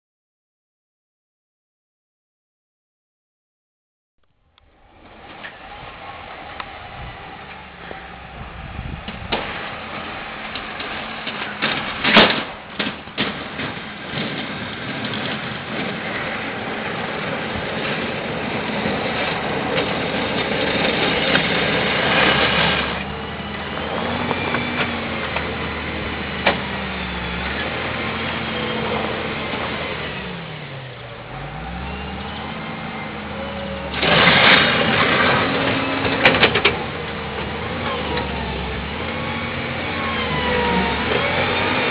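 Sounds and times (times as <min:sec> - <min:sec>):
diesel engine running and revving: 0:04.6 - 0:41.9
loud sudden knocks and clatter: 0:09.0 - 0:16.2.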